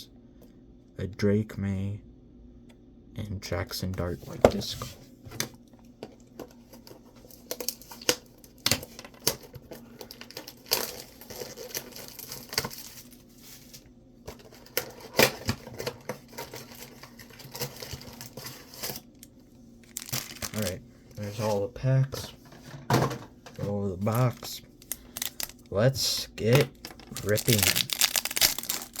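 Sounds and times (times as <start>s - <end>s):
shrink-wrap crinkling and tearing: 6.8s - 21.6s, 23.7s - 29.0s
cardboard being handled: 26.4s - 29.0s.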